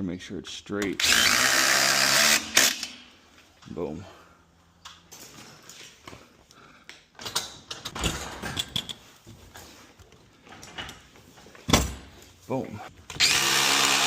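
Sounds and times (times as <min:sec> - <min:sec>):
hardware knocks and metallic clinks: 0:07.2 - 0:09.4.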